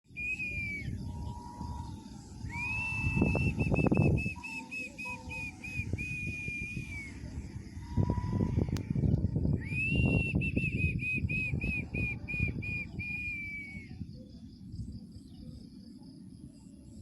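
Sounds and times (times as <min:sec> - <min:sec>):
high clear whistle: 0:00.1 - 0:08.8, 0:09.5 - 0:14.0
low rumbling noise: 0:00.2 - 0:17.0.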